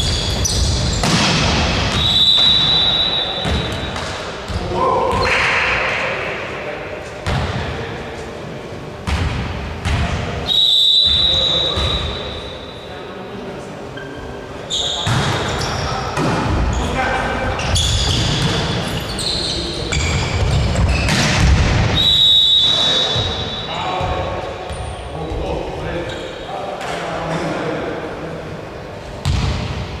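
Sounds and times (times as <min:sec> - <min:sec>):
ball bouncing on court: 0:00.0 - 0:02.7, 0:03.4 - 0:05.8, 0:07.2 - 0:07.8, 0:09.0 - 0:10.2, 0:11.1 - 0:12.2, 0:15.0 - 0:16.8, 0:19.9 - 0:22.0, 0:29.2 - 0:29.8
players' voices echoing: 0:01.1 - 0:30.0
referee's whistle: 0:01.9 - 0:03.8, 0:10.5 - 0:12.9, 0:21.9 - 0:23.7.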